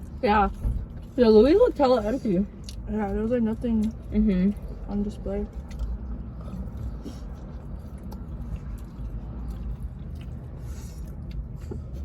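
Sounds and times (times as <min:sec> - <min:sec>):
steady low rumble: 0:00.0 - 0:12.0
person chewing and eating: 0:02.4 - 0:12.0.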